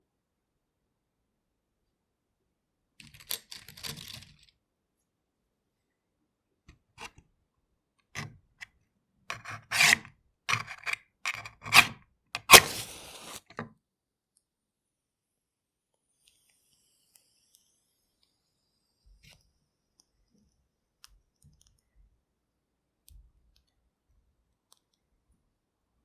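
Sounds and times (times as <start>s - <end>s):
match striking scrapes: 9.3s - 13.5s
match flaring fizz: 12.4s - 13.4s.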